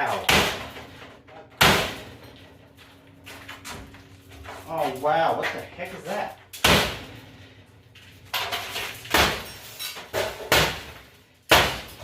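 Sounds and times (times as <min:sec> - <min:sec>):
hammer striking oven: 0:00.0 - 0:02.2, 0:06.6 - 0:07.1, 0:10.1 - 0:12.0.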